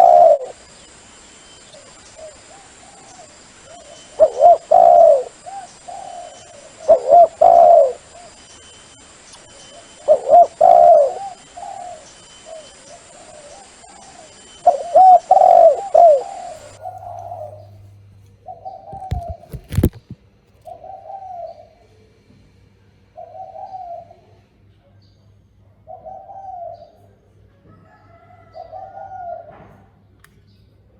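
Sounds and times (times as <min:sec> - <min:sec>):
dove cooing: 0:00.0 - 0:17.8, 0:18.4 - 0:20.1, 0:20.7 - 0:21.8, 0:23.2 - 0:24.4, 0:25.9 - 0:27.2, 0:28.1 - 0:29.7.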